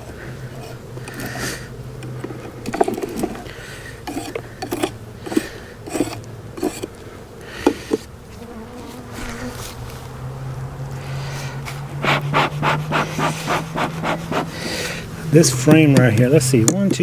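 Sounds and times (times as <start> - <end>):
bees buzzing: 0.0 - 17.0
scraping and knocking on hive: 7.6 - 10.1.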